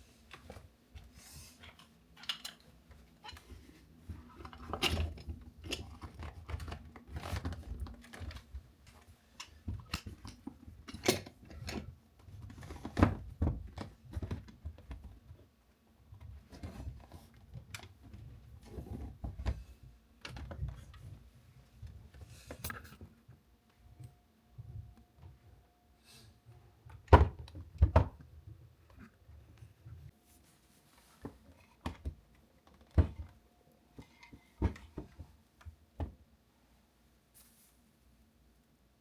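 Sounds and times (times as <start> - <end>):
rustling and crinkling: 37.3 - 38.1.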